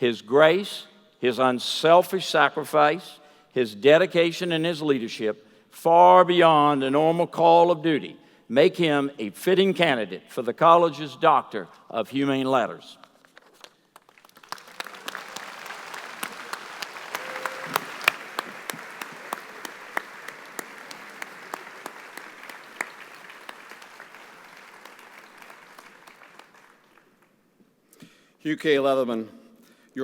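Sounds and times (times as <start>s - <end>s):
audience applauding: 14.0s - 27.3s.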